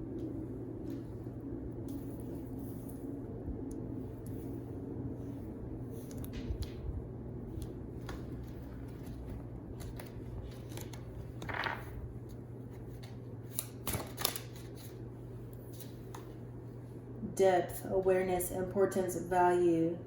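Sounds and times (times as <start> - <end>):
steady low hum: 0.0 - 20.0
cards flicking and clicking: 13.0 - 15.0.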